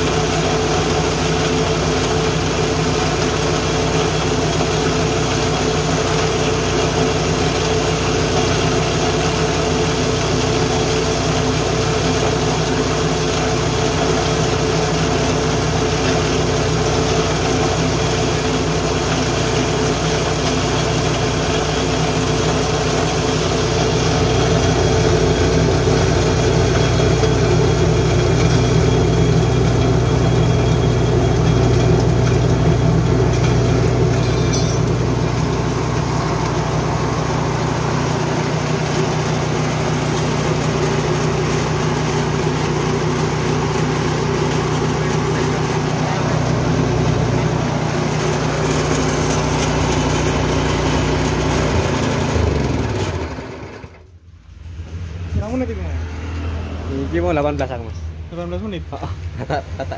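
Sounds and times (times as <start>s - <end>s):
grain mill engine drone: 0.0s - 59.9s.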